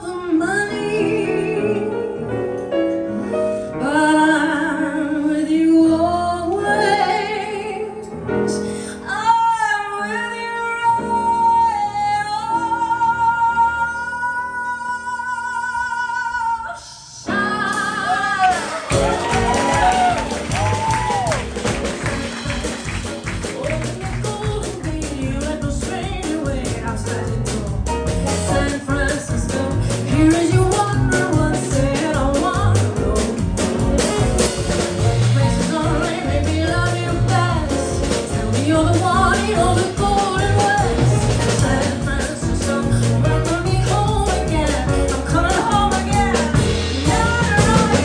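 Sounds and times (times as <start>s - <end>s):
live jazzy band music: 0.0s - 15.1s, 17.3s - 48.0s
drums: 17.3s - 48.0s
bass notes: 17.8s - 48.0s.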